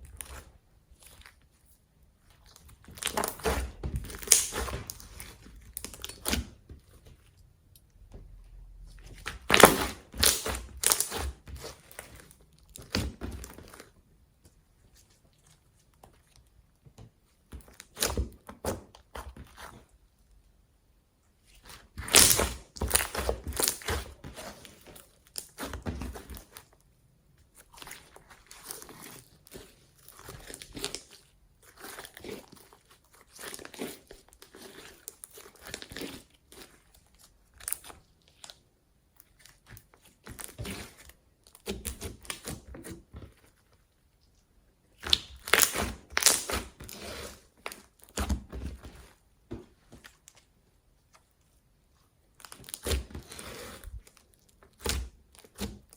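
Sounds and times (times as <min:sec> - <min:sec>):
slime crackling when squeezed: 0:04.1 - 0:05.0, 0:09.5 - 0:11.2.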